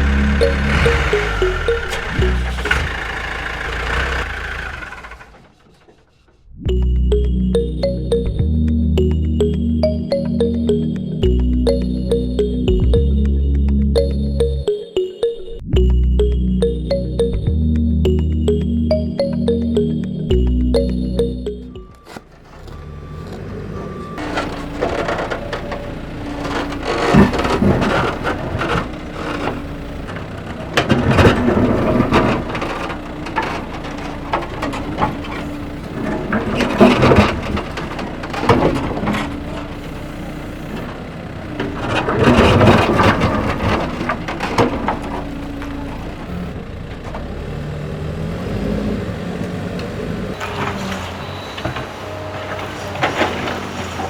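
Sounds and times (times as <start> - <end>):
crunching and scraping of gravel: 24.2 - 30.1.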